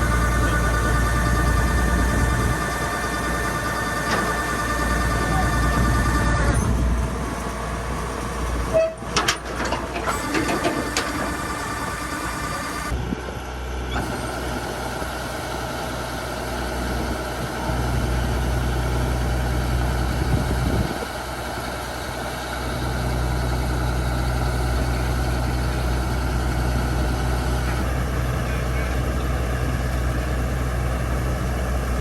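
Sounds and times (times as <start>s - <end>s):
diesel engine rumbling: 0.0s - 32.0s.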